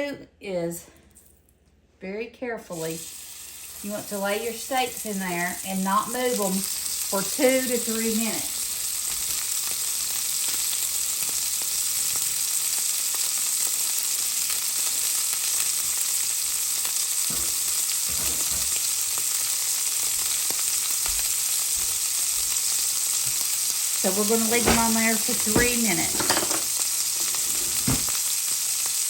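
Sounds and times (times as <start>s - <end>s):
steaks sizzling in oil: 2.7s - 29.0s.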